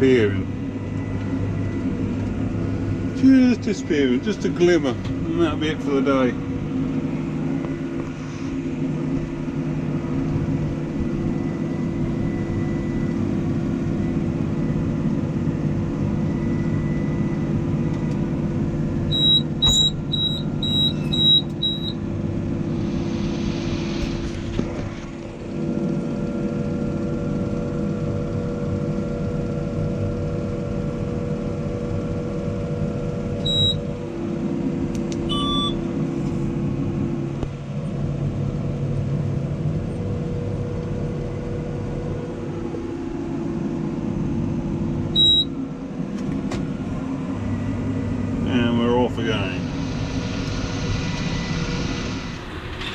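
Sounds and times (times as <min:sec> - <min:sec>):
tractor diesel engine running: 0:00.0 - 0:52.9
short high electronic beeps: 0:19.1 - 0:22.0, 0:33.5 - 0:33.8, 0:35.3 - 0:35.8, 0:45.2 - 0:45.5.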